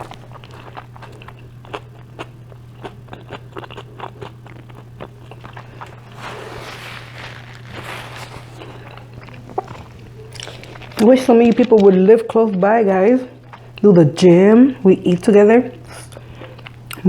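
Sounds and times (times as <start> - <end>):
hissing rustle: 6.0 - 8.8.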